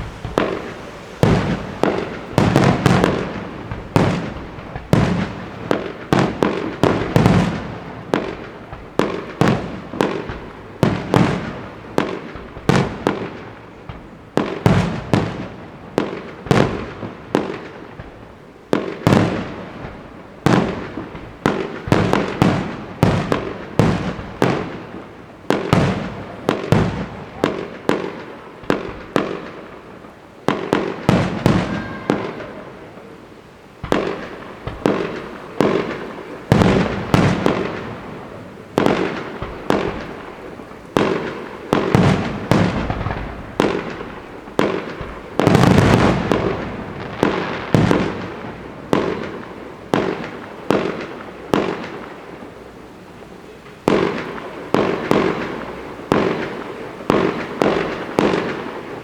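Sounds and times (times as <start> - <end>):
firework shell bursts: 0.0 - 5.1.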